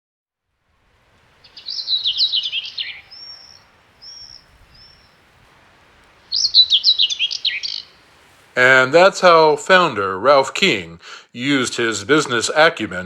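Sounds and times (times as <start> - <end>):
songbird warbling: 1.0 - 9.8
short thin bird whistles: 1.4 - 5.1.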